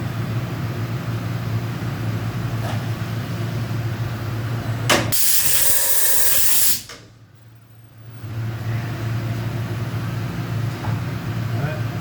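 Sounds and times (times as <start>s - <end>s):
loud hiss: 5.2s - 6.9s.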